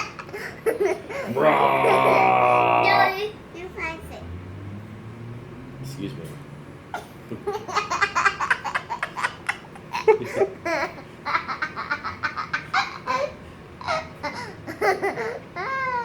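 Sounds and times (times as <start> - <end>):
toddler giggling: 7.0 - 16.0.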